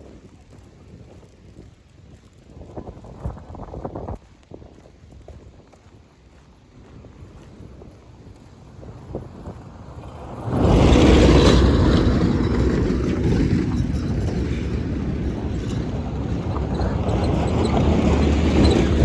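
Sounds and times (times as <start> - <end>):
heavy engine rumbling: 10.1 - 19.0.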